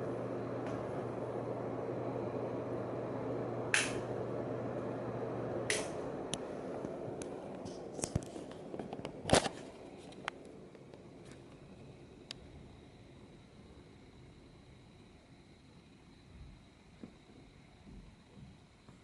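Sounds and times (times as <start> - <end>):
ceiling fan motor hum: 0.0 - 19.0
sharp clicks: 3.7 - 4.0.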